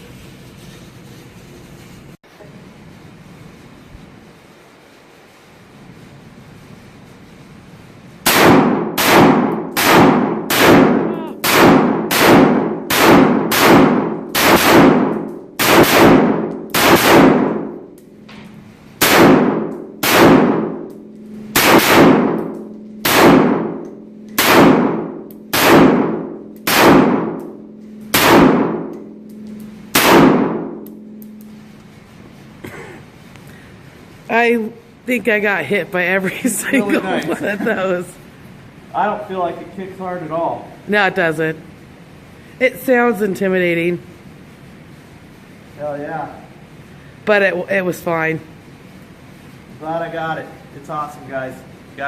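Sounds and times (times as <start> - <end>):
pistol gunshots with echo: 8.2 - 17.9, 19.0 - 31.1.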